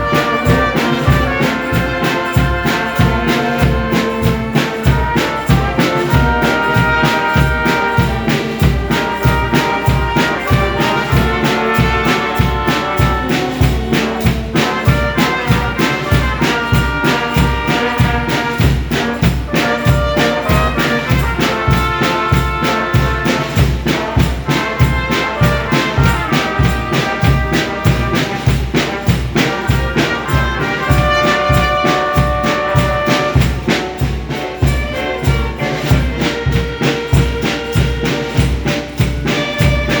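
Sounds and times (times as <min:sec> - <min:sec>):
steady bass drum beat: 0:00.0 - 0:40.0
trumpets and trombones playing melody: 0:00.0 - 0:40.0.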